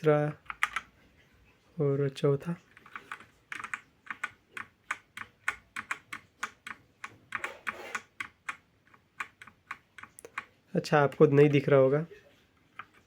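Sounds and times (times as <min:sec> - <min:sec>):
mechanical keyboard keys clacking: 0:00.4 - 0:00.9, 0:02.7 - 0:10.5.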